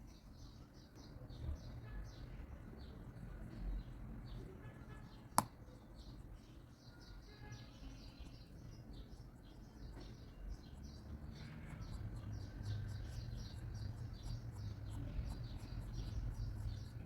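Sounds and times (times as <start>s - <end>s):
faint low hum: 0.0s - 17.0s
pencil scratching on paper: 10.7s - 17.0s.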